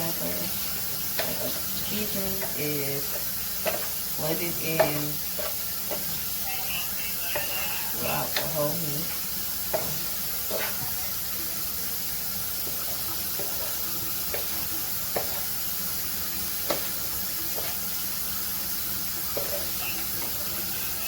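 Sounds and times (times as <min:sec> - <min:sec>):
meat sizzling in a frying pan: 0:00.0 - 0:21.0.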